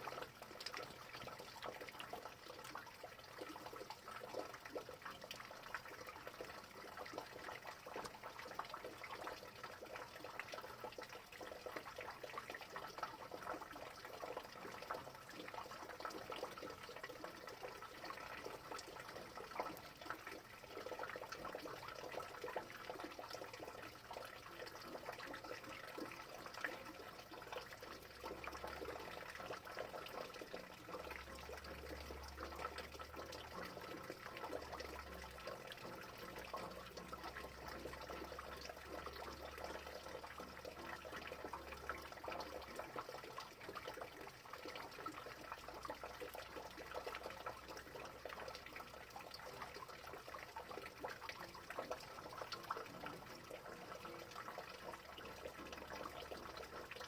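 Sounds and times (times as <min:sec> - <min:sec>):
rain falling steadily: 0:00.0 - 0:43.8.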